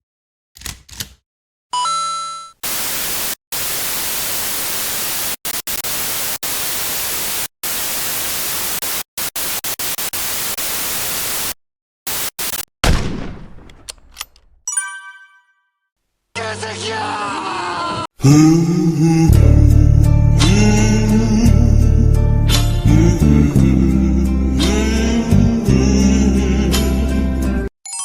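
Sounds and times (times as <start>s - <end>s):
loud static hiss: 2.6s - 11.5s
quick clicks: 12.5s - 14.7s
heavy boom impact: 12.8s - 14.6s
short ringing chime: 14.7s - 15.7s.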